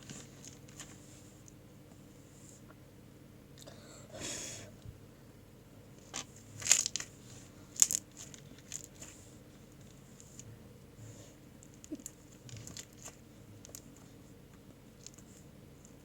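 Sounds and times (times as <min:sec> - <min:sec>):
slime crinkly rustle: 0:06.0 - 0:10.4, 0:11.6 - 0:14.1.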